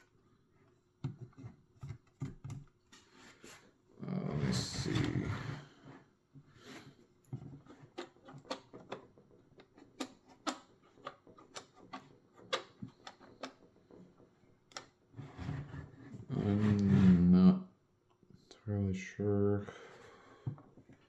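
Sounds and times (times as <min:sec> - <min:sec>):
toy puzzle box clicks and taps: 0:08.0 - 0:13.6.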